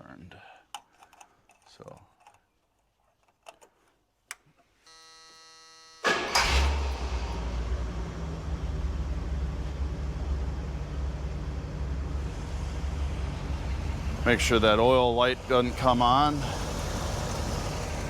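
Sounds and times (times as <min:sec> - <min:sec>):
car warning buzzer: 0:04.9 - 0:07.4
car engine starting and idling: 0:06.0 - 0:18.0.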